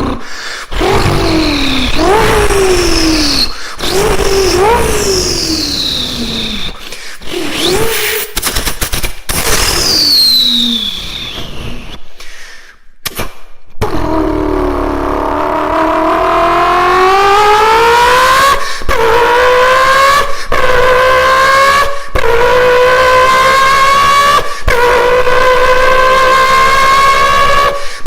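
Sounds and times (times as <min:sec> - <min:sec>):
car engine accelerating: 0:00.0 - 0:08.8, 0:13.9 - 0:27.8
turbo whistle: 0:00.8 - 0:08.3, 0:09.4 - 0:12.0.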